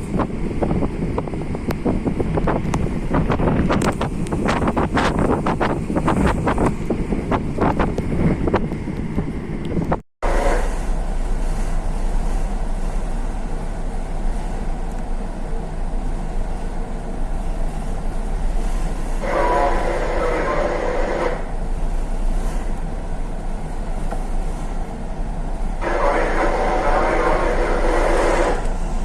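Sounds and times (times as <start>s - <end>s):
wind buffeting microphone: 0.0s - 10.0s
low even ship hum: 0.0s - 29.0s.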